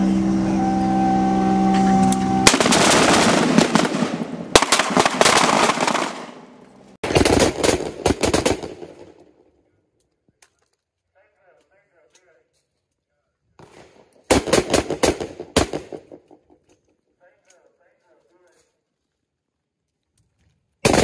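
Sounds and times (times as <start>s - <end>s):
steady hum: 0.0s - 4.6s
rifles firing rapid shots: 2.5s - 9.2s, 13.6s - 16.2s.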